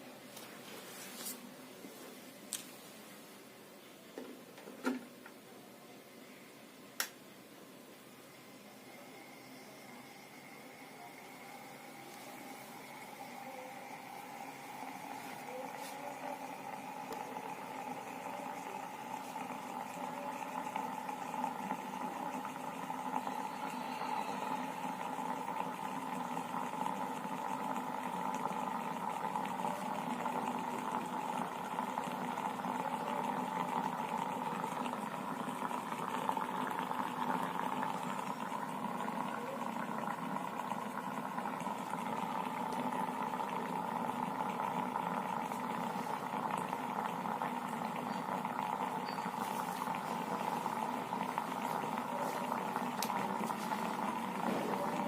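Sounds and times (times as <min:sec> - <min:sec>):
water bubbling and hissing: 0:12.2 - 0:55.0.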